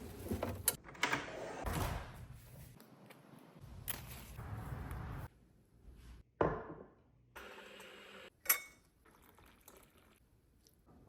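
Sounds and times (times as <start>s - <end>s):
glass clinking: 8.5s - 8.9s.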